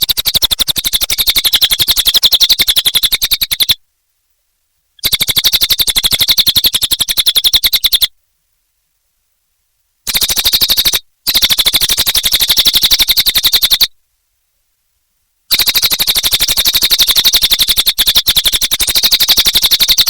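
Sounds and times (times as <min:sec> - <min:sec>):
jay rattling call: 0:00.0 - 0:03.8, 0:15.5 - 0:20.0.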